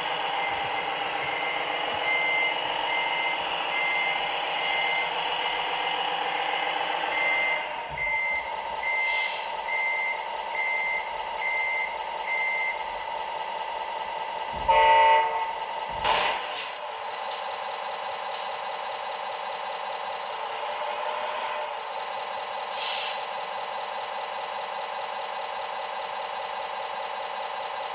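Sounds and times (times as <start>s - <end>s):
vehicle reversing alarm beeping: 0.0s - 13.2s, 14.6s - 16.3s
engine running: 0.0s - 27.9s
horn toot: 14.7s - 15.6s.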